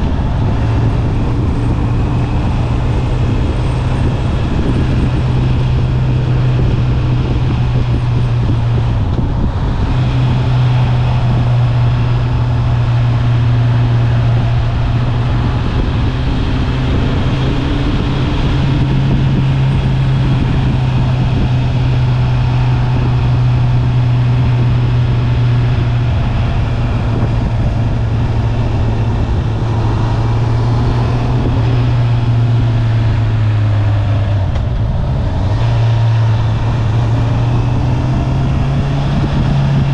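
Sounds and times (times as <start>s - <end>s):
motorcycle engine and exhaust: 0.0s - 39.9s.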